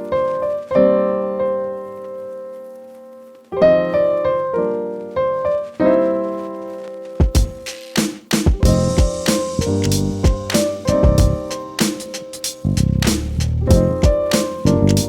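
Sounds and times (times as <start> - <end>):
piano music: 0.0 - 15.0.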